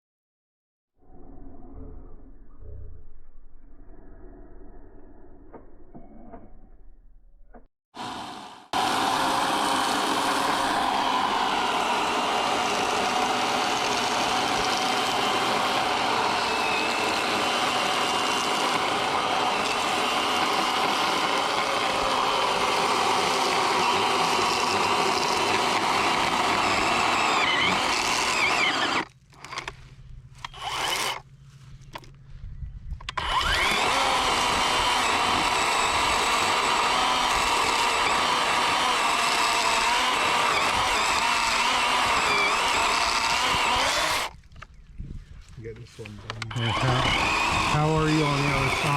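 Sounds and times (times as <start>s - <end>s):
electric chainsaw cutting wood: 8.0s - 29.8s, 30.4s - 31.2s, 33.1s - 44.4s, 46.3s - 48.9s.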